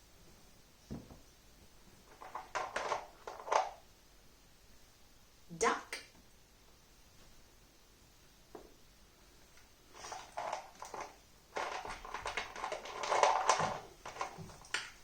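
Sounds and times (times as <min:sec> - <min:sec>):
rustling and handling noise: 0:00.0 - 0:03.9, 0:08.5 - 0:15.0
small objects clicking and tapping: 0:02.1 - 0:03.8, 0:09.6 - 0:15.0.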